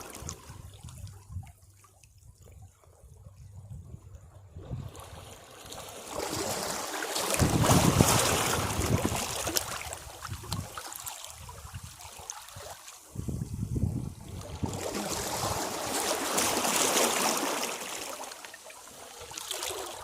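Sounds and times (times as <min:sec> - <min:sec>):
sea waves crashing on rocks: 0:05.9 - 0:09.9, 0:14.4 - 0:20.0.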